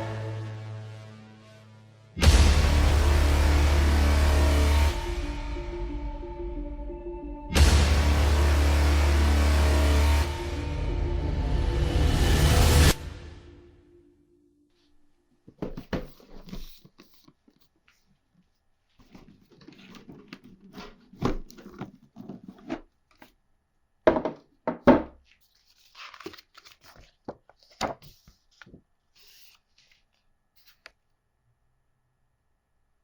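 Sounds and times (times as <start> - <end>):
cardboard knocks: 24.1 - 25.1
packaging tearing and rustling: 25.4 - 30.0.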